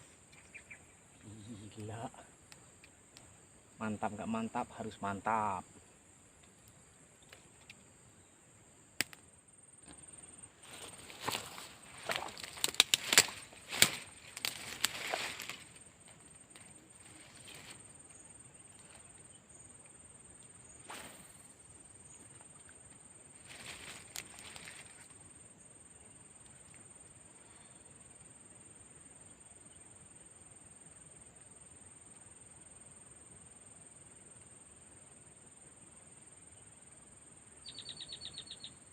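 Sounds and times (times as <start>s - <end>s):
sharp clicks: 12.4s - 14.9s.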